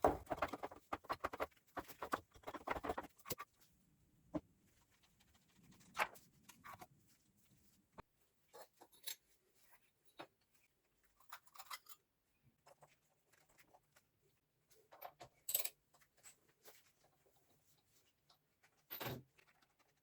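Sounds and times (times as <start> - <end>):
small metal objects clicking and clinking: 11.2 - 12.0, 15.0 - 16.4.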